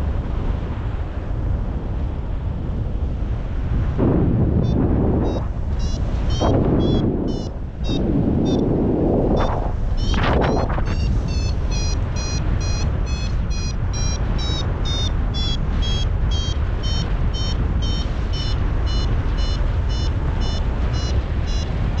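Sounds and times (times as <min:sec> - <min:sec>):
wind rushing over microphone: 0:00.0 - 0:22.0
variometer beeping: 0:04.6 - 0:08.7, 0:09.3 - 0:22.0.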